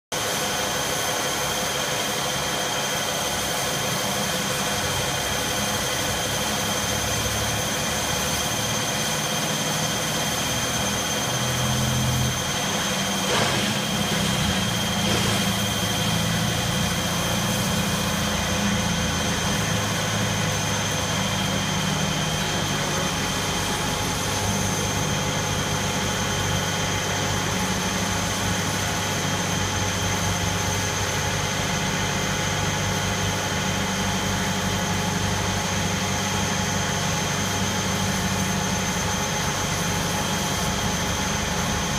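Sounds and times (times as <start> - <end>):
milling machine drilling whine: 0.2 - 41.9.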